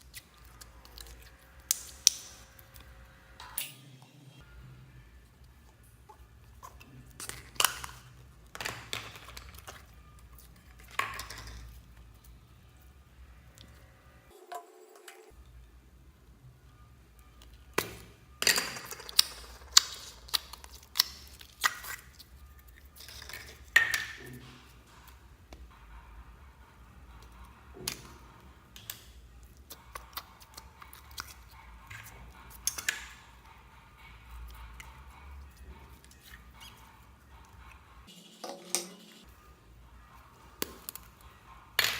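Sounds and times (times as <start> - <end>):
hands squishing slime: 28.8 - 33.2.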